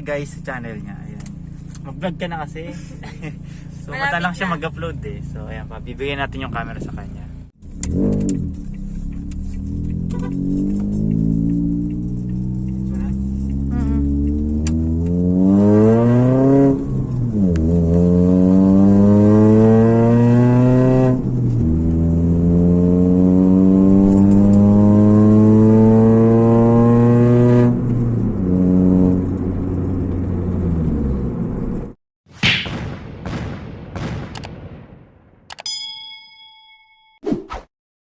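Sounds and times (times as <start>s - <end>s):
engine revving through straight pipe: 9.3s - 29.3s.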